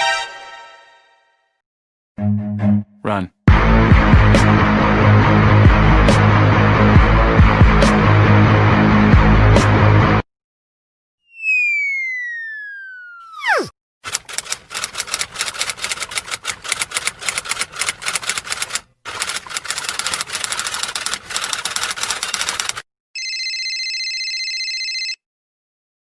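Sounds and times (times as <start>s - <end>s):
downward pitch swoop: 11.2s - 13.7s
steady electronic tone: 11.3s - 13.7s
typewriter key clicks: 14.1s - 22.8s.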